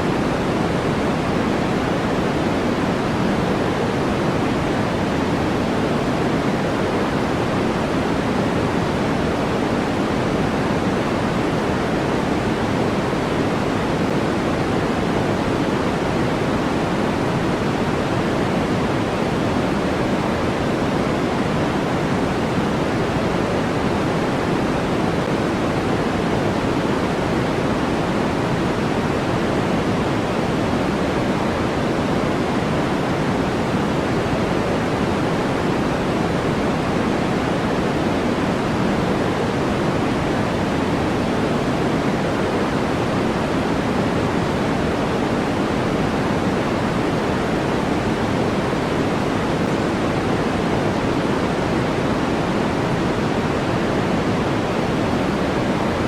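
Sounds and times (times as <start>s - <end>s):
white noise rush: 0.0s - 56.0s.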